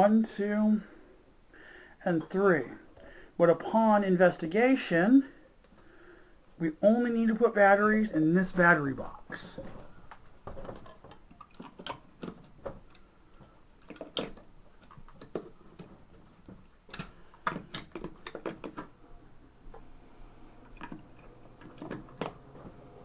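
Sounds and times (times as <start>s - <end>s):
plastic clicks and knocks: 13.8s - 18.9s.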